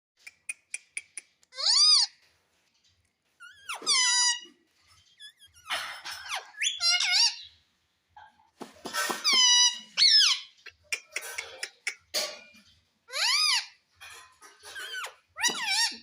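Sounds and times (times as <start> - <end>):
parakeet shrill calls: 1.6 - 2.1, 3.4 - 4.5, 5.1 - 7.6, 9.2 - 10.7, 13.1 - 13.8.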